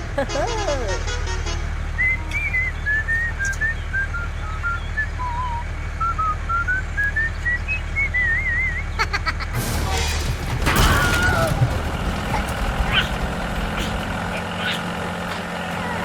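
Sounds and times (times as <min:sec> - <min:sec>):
person whistling a tune: 0:02.0 - 0:08.8.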